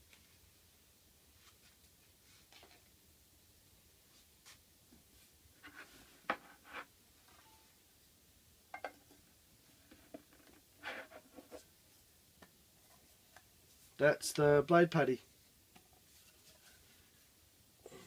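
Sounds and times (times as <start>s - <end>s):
tools scraping and knocking on bench: 5.6s - 6.9s.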